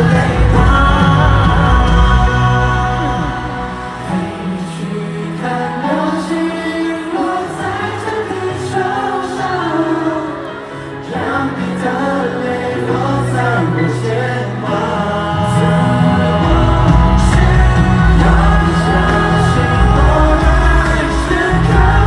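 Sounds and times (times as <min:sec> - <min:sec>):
drums: 0:00.0 - 0:05.8, 0:15.2 - 0:22.0
keyboard chords: 0:00.0 - 0:22.0
person singing: 0:00.0 - 0:22.0.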